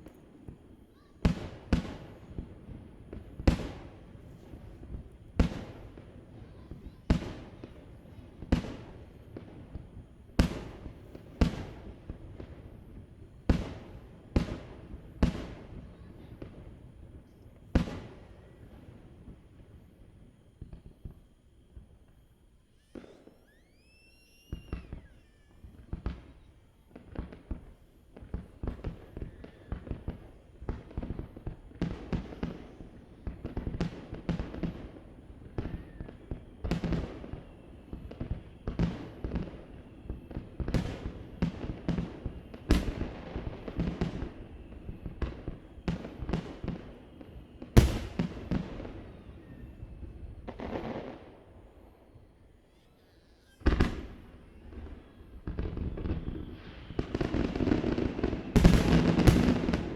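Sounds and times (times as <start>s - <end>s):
fireworks booms and cracks: 0.0s - 19.7s, 22.8s - 51.8s, 53.4s - 59.9s
rising firework whistle: 17.8s - 59.9s.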